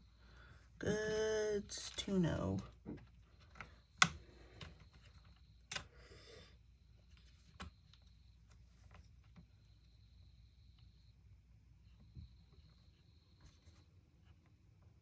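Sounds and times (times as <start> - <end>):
small parts clicking and tapping: 3.0 - 6.0.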